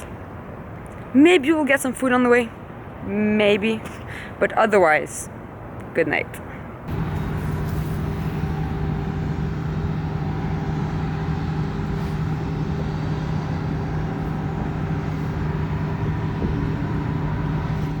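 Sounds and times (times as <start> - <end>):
street noise: 0.0 - 18.0
vehicle engine humming: 6.9 - 18.0.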